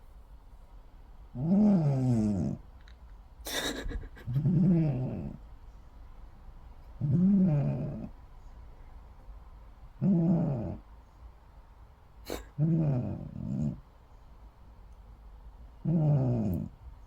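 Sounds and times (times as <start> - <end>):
cat snoring: 1.4 - 2.6, 4.4 - 5.4, 7.0 - 8.1, 10.0 - 10.8, 12.3 - 13.8, 15.8 - 16.7.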